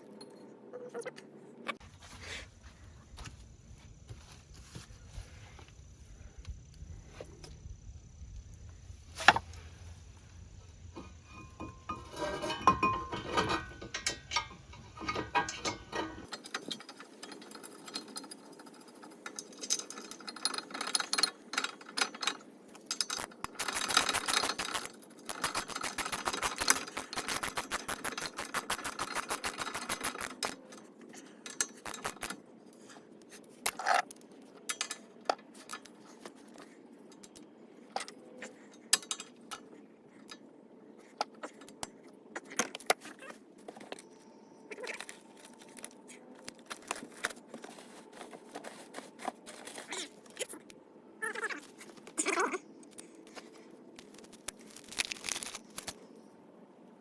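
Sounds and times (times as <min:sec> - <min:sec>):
metal tools clinking and knocking: 0:11.0 - 0:32.4
rapid scraping of parts: 0:11.0 - 0:34.0.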